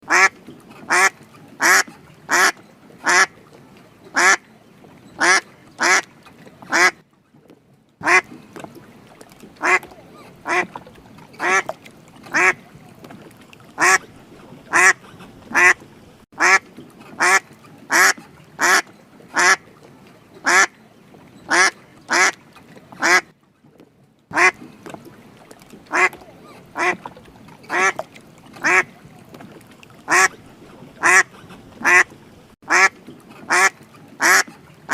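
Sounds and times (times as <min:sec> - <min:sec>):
duck quacking: 0:00.1 - 0:00.3, 0:00.9 - 0:03.3, 0:04.2 - 0:04.4, 0:05.2 - 0:06.1, 0:06.7 - 0:07.0, 0:08.0 - 0:08.3, 0:09.6 - 0:10.7, 0:11.4 - 0:11.7, 0:12.3 - 0:12.6, 0:13.8 - 0:14.0, 0:14.7 - 0:15.8, 0:16.4 - 0:16.6, 0:17.2 - 0:18.8, 0:19.4 - 0:19.6, 0:20.4 - 0:20.7, 0:21.5 - 0:22.4, 0:23.0 - 0:23.2, 0:24.3 - 0:24.6, 0:25.9 - 0:26.2, 0:26.8 - 0:27.0, 0:27.7 - 0:28.0, 0:28.6 - 0:28.9, 0:30.1 - 0:30.3, 0:31.0 - 0:32.1, 0:32.7 - 0:32.9, 0:33.5 - 0:34.9.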